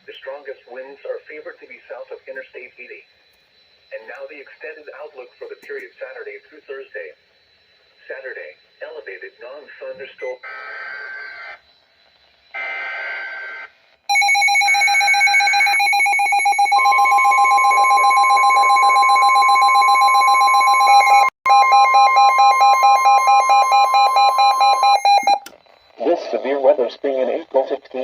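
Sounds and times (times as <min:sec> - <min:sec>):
steady warning alarm tone: 0:00.0 - 0:28.0
screeching data burst chirps: 0:00.2 - 0:27.4
alert alarm beeping rapidly: 0:14.1 - 0:26.6.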